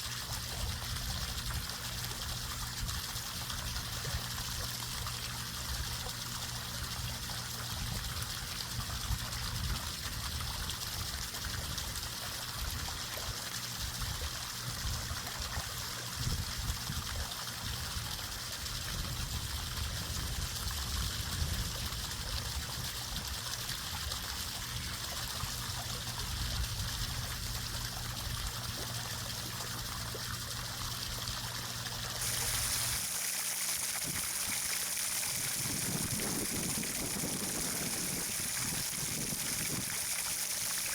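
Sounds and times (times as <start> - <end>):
water trickling: 22.8 - 40.9.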